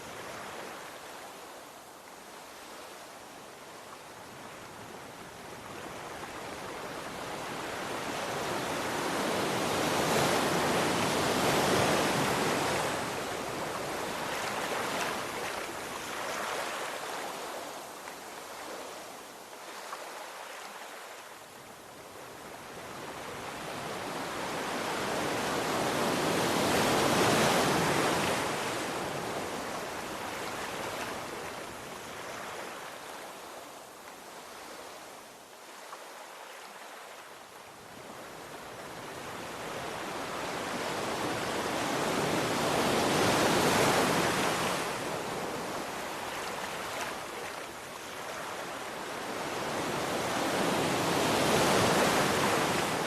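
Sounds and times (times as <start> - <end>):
ocean surf washing onto shore: 39.0 - 53.0.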